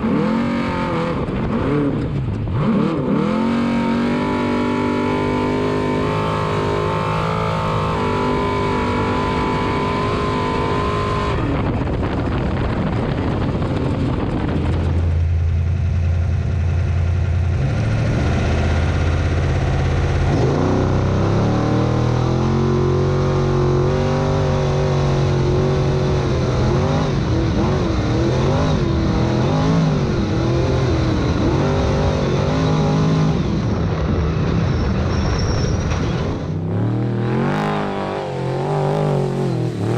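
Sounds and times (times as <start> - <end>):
race truck engines revving: 0.0 - 39.9.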